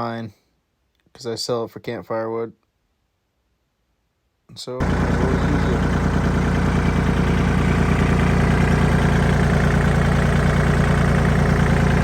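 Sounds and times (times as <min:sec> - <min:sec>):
engine running steadily: 0:04.8 - 0:12.0.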